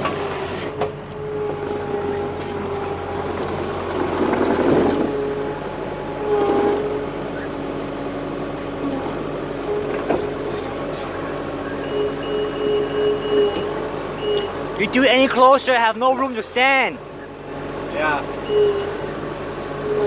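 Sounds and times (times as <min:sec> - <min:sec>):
heavy construction machine running: 0:00.0 - 0:20.0
reversing alarm beeping: 0:11.1 - 0:20.0.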